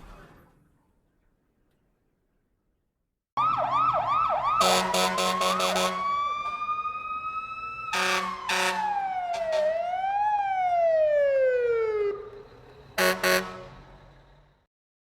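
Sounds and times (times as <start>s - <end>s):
fire truck siren winding down: 3.4s - 14.6s
air horn blasts: 4.6s - 6.1s, 7.9s - 9.8s, 13.0s - 13.9s.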